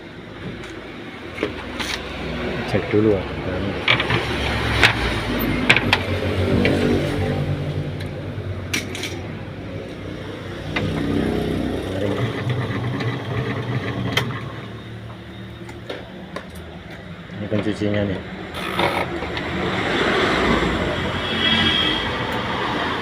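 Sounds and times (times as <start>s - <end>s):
washing machine motor humming: 10.6s - 15.7s.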